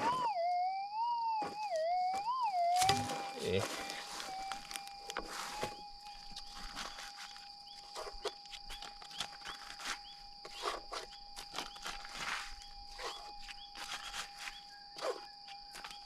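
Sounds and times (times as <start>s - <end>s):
high insect drone: 0.0s - 16.0s
small repeated chirps: 0.0s - 16.0s
footsteps crunching on dry ground: 1.4s - 16.0s.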